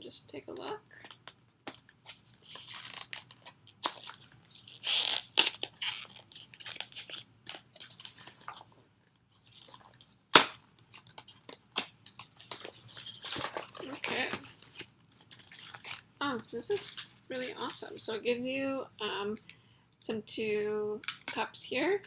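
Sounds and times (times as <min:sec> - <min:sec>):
packaging crinkling and rustling: 0:00.9 - 0:16.1, 0:16.7 - 0:18.1.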